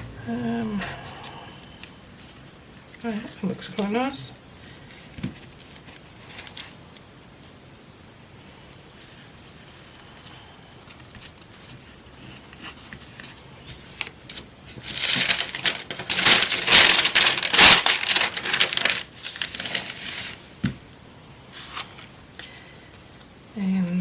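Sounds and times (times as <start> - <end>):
magazine paper rustling and crinkling: 4.8 - 7.1, 9.0 - 20.5.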